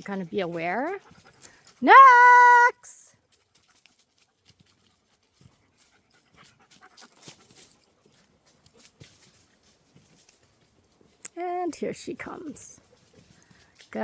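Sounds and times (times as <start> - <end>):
dog panting faintly: 0.0 - 1.8, 3.1 - 11.1, 12.3 - 13.9
small clicks and rustles: 3.2 - 14.0.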